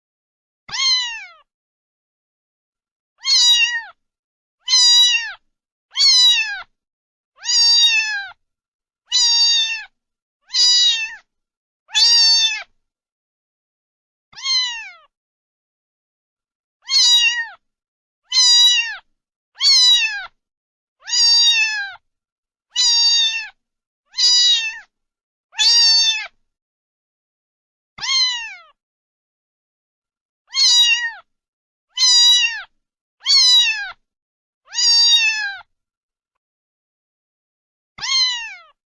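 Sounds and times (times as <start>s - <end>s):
cat meowing: 0.7s - 1.5s, 3.2s - 4.0s, 4.6s - 6.7s, 7.4s - 8.4s, 9.1s - 11.3s, 11.9s - 12.7s, 14.3s - 15.1s, 16.8s - 17.6s, 18.3s - 20.4s, 21.0s - 22.0s, 22.7s - 24.9s, 25.6s - 26.4s, 28.0s - 28.8s, 30.5s - 31.3s, 31.9s - 34.0s, 34.7s - 35.7s, 38.0s - 38.8s.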